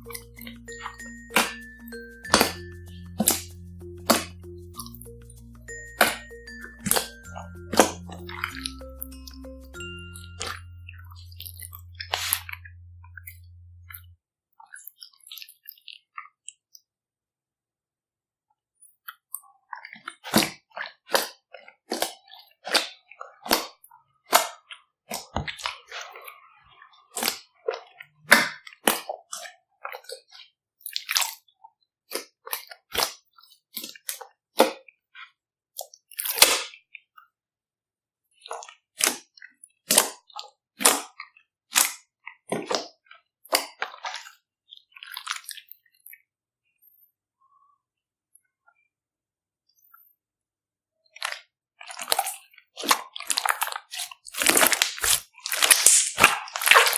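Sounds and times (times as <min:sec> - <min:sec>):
slime clicking and popping: 0:53.3 - 0:56.9.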